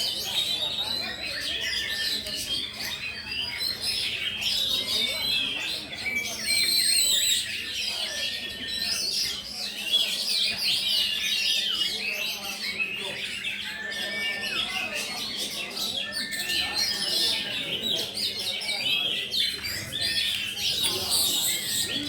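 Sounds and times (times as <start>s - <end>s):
other caged songbirds: 0.0s - 22.0s
songbird singing: 10.5s - 22.0s.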